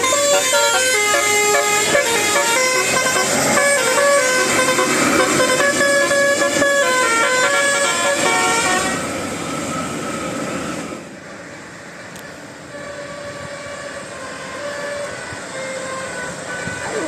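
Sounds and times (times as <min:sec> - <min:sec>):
bus musical horn tune: 0:00.0 - 0:09.1, 0:12.7 - 0:17.0
faint steady horn tone: 0:00.0 - 0:09.1, 0:12.2 - 0:17.0.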